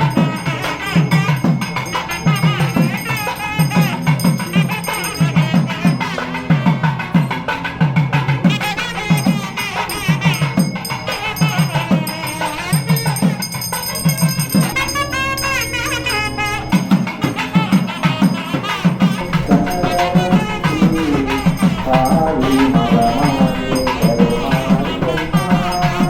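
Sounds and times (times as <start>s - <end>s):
drum and rattle beat: 0.0s - 26.0s
melody: 13.6s - 26.0s.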